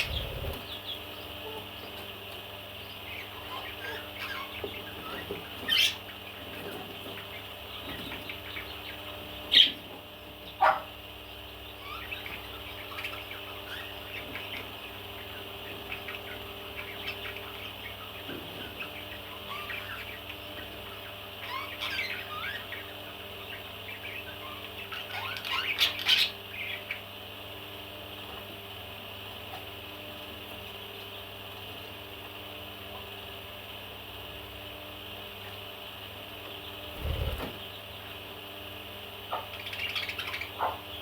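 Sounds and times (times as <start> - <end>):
parrot chirping and calling: 0.0 - 0.6
steady low hum: 0.0 - 1.9, 36.4 - 39.0.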